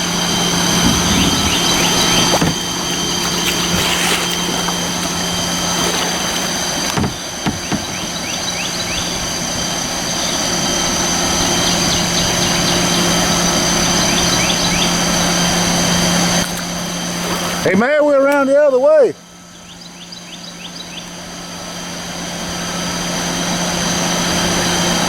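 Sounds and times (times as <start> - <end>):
river water rushing: 0.0 - 8.8
light knocks: 0.8 - 5.3, 6.8 - 8.4
bird chirps: 1.0 - 2.8, 7.5 - 9.2.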